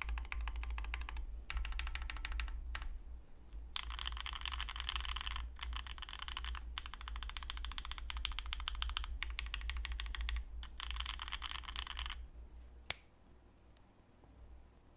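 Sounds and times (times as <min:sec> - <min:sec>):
fast typing on mechanical keyboard: 0:00.0 - 0:02.9, 0:03.8 - 0:12.2.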